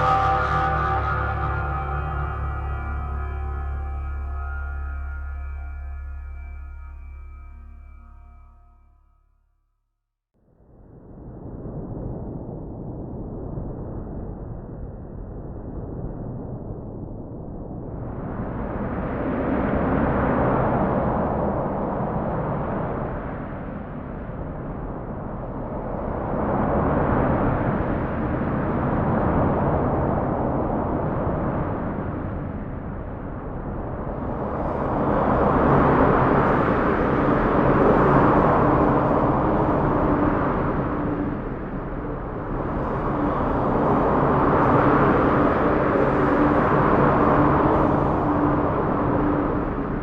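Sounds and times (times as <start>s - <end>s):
dark rumbling noise: 0.0s - 9.2s, 33.8s - 50.0s.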